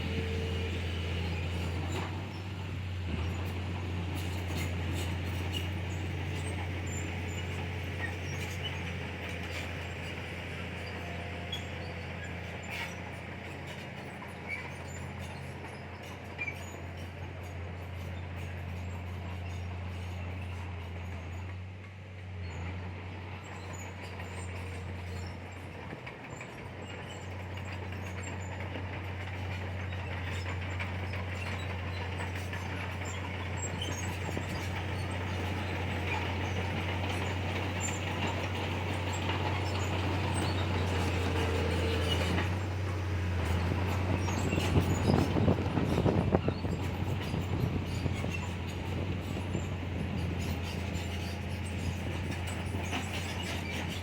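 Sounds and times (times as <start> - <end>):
diesel engine droning: 0.0 - 54.0
crawler tracks clattering: 24.1 - 54.0.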